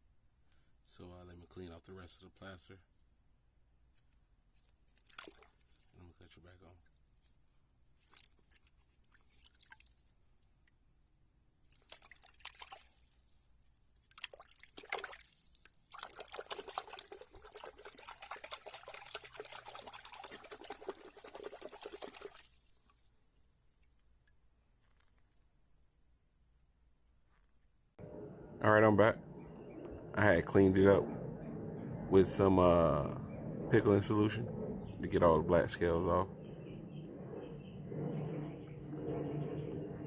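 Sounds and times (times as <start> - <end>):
water running and splashing: 8.0 - 9.9, 11.8 - 13.2, 14.1 - 22.9.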